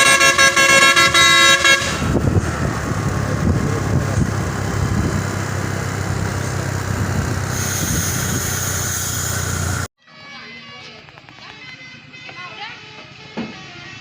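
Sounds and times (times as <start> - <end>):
bus diesel engine rumbling: 0.0 - 9.9
road noise: 0.0 - 9.9.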